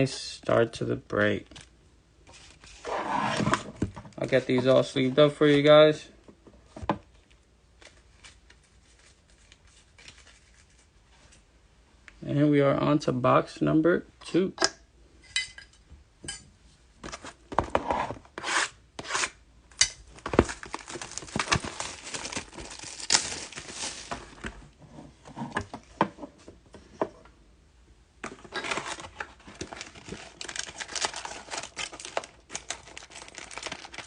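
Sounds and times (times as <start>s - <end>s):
plastic wrapping tearing and crinkling: 20.1s - 24.5s, 28.5s - 34.0s.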